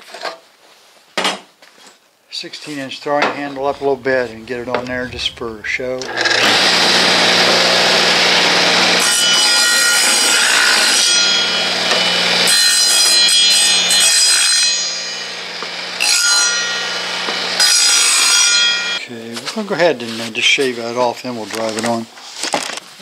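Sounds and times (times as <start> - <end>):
steady pitched hum: 2.8 - 9.2.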